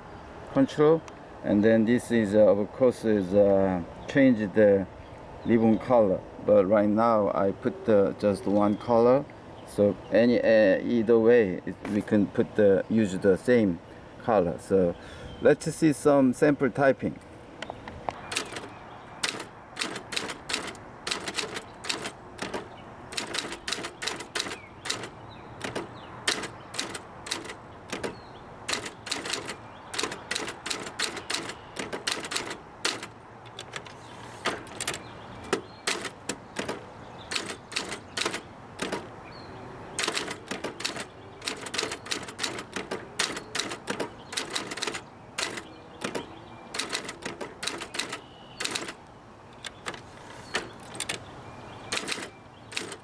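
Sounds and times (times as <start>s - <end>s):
manual typewriter typing: 18.3s - 39.1s, 39.9s - 51.2s, 51.9s - 53.0s.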